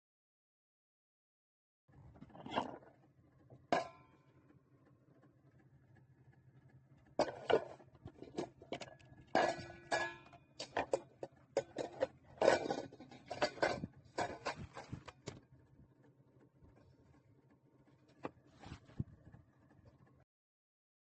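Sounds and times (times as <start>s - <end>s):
kitchenware clattering and clinking: 7.2s - 15.3s.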